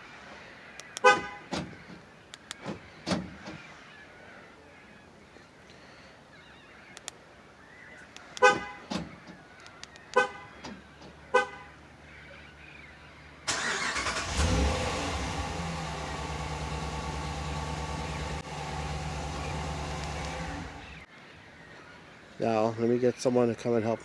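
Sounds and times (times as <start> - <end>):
engine starting and idling: 13.5 - 21.1.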